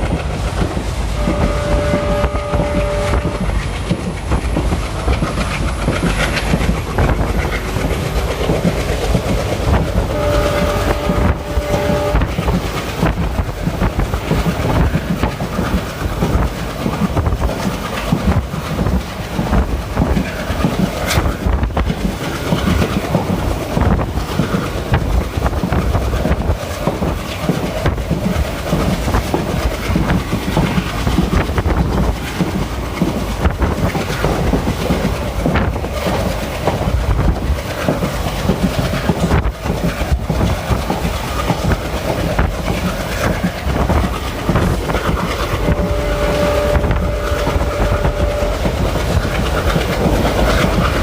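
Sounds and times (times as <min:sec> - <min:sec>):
train wheels on rails: 0:00.0 - 0:51.0
locomotive horn: 0:01.2 - 0:03.6, 0:10.1 - 0:12.5, 0:45.4 - 0:49.8.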